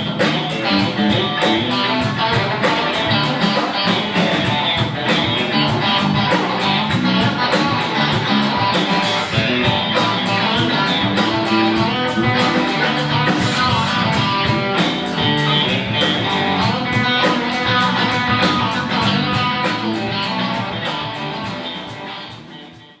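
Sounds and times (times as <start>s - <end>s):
guitar music: 0.0s - 23.0s.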